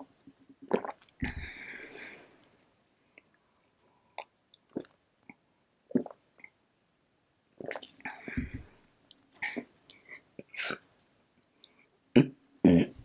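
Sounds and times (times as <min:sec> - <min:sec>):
swallowing: 0:00.6 - 0:01.7, 0:07.6 - 0:08.8
breaths: 0:01.2 - 0:02.6, 0:08.0 - 0:08.8, 0:09.4 - 0:10.4, 0:11.5 - 0:12.0.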